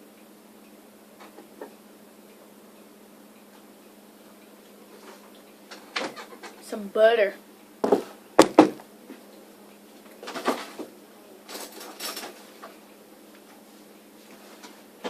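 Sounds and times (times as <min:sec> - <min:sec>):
sharp knocks of kitchen items: 0:07.8 - 0:08.8.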